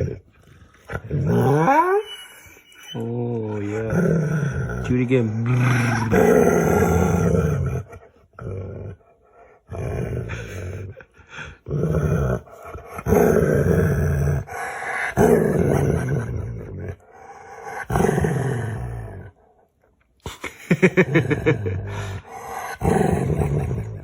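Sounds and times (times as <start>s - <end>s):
dog making drawn-out vocal calls: 1.4s - 3.7s, 5.5s - 6.3s.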